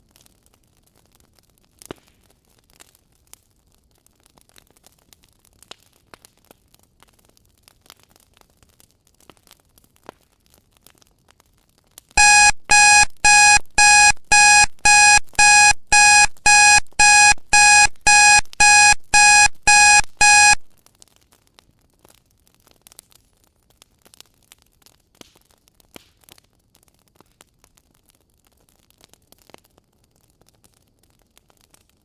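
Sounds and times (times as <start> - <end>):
alarm beeping: 12.2 - 20.7.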